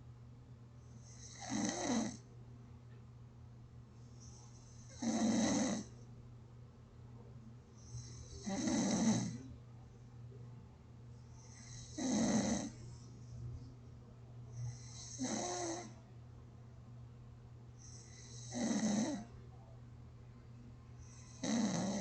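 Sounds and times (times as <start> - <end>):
steady low hum: 0.0 - 22.0
person snoring: 1.1 - 2.2, 4.6 - 5.9, 7.9 - 9.5, 11.5 - 12.8, 14.7 - 16.0, 17.8 - 19.3, 21.1 - 22.0.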